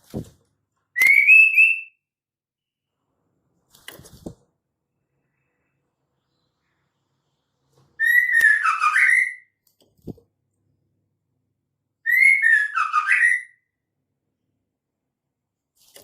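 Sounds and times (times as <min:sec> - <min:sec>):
bird whistled call: 0:01.0 - 0:02.0, 0:08.0 - 0:09.5, 0:12.1 - 0:13.6.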